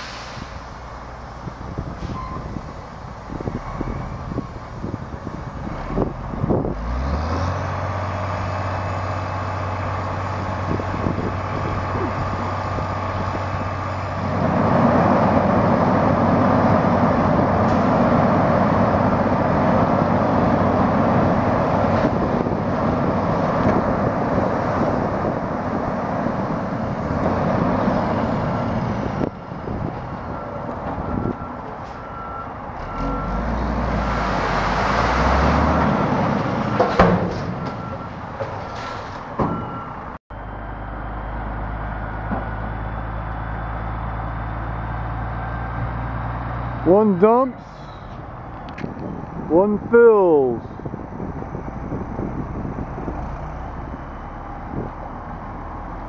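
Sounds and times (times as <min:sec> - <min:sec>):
diesel engines droning: 0:00.0 - 0:56.0
truck reversing beeper: 0:02.0 - 0:02.6, 0:28.1 - 0:48.3.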